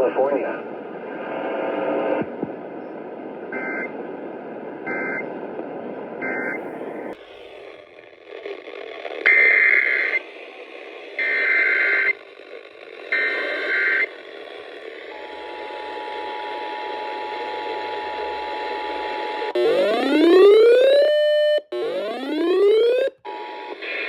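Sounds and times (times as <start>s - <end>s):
radio hiss: 0.0s - 2.4s, 6.3s - 19.6s, 23.6s - 24.0s.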